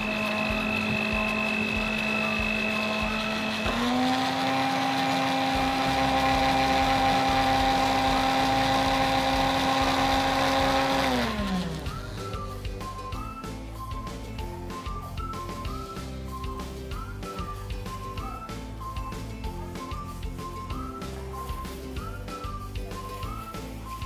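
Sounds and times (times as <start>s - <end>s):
blender motor running: 0.0s - 12.7s.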